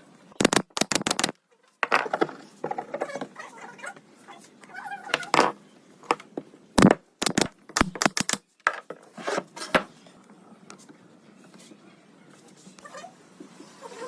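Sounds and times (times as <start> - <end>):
sharp knocks and taps: 0.4 - 1.3, 6.8 - 8.4.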